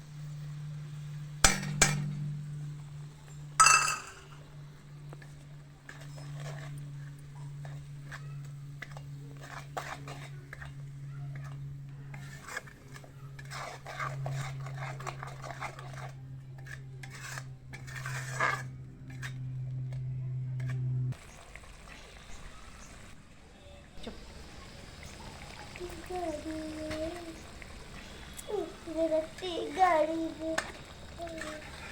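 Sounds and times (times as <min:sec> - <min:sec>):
steady low hum: 0:00.0 - 0:12.1
spoon scraping cooking pan: 0:03.6 - 0:04.4, 0:05.2 - 0:19.9, 0:24.0 - 0:31.9
utensils clinking on pan: 0:03.6 - 0:04.5.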